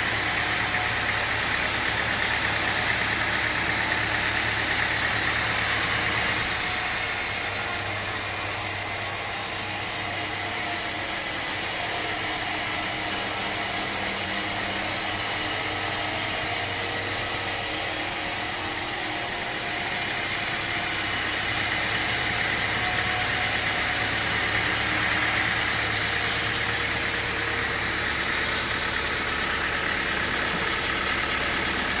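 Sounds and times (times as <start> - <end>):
sawmill machinery humming: 0.0 - 32.0
hiss: 4.4 - 19.4.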